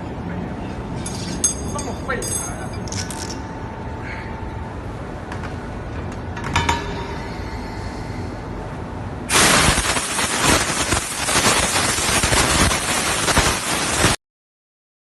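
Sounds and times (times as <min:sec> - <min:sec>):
loud steady hiss: 0:07.1 - 0:14.2.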